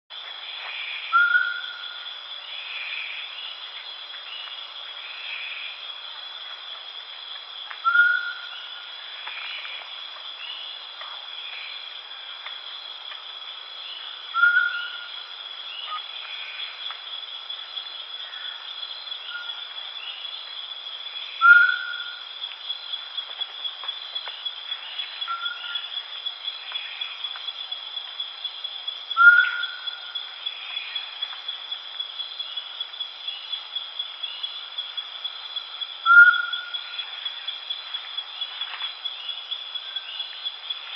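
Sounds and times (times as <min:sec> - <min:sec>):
insects chirring: 0:00.1 - 0:40.9
faint bird calls: 0:00.6 - 0:02.0, 0:07.8 - 0:09.8, 0:13.9 - 0:15.1, 0:21.3 - 0:22.2, 0:24.8 - 0:25.9, 0:29.2 - 0:31.1, 0:36.0 - 0:37.4
owl hooting: 0:07.8 - 0:08.4, 0:14.4 - 0:15.1, 0:21.4 - 0:22.2, 0:29.2 - 0:29.9, 0:36.1 - 0:36.7.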